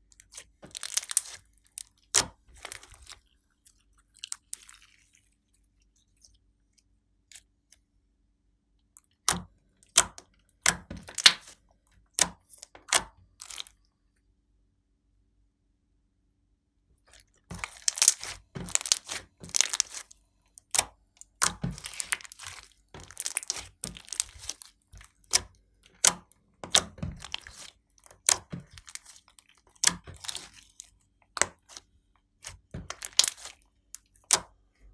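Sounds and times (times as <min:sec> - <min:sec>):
slime squished by hand: 0:00.0 - 0:06.3, 0:09.2 - 0:11.6, 0:12.2 - 0:13.8, 0:17.0 - 0:34.6.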